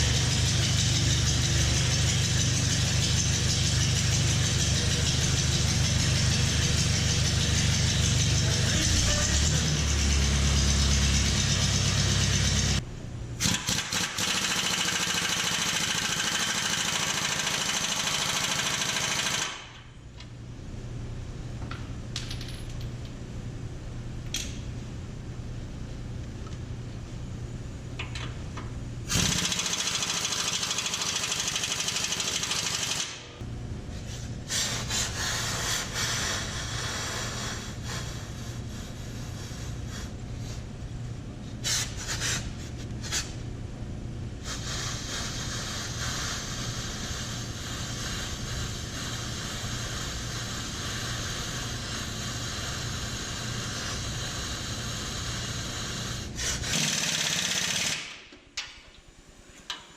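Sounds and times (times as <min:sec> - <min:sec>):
tractor engine running: 0:00.0 - 0:12.8.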